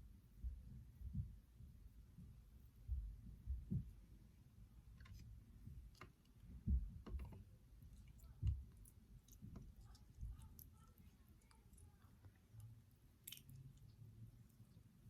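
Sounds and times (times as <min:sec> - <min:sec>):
soft thumps: 0:06.6 - 0:07.4.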